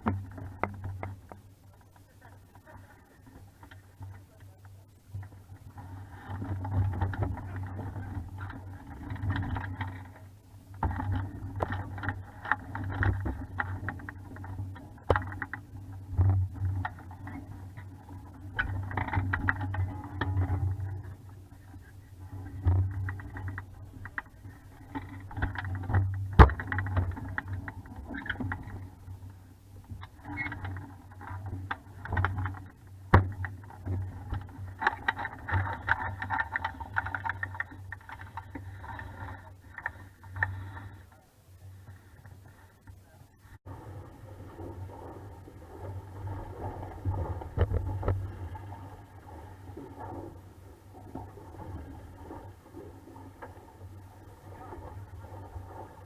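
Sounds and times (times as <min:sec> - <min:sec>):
sharp knocks from boat: 0:00.0 - 0:01.5, 0:22.5 - 0:28.9, 0:31.4 - 0:40.8
surging wind and water: 0:00.0 - 0:56.0.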